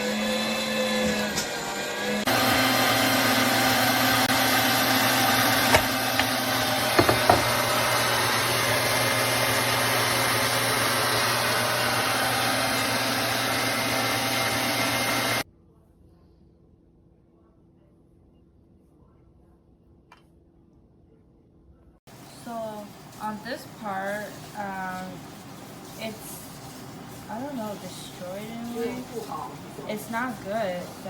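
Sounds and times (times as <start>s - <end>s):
meat grinder motor humming: 0.0s - 15.4s.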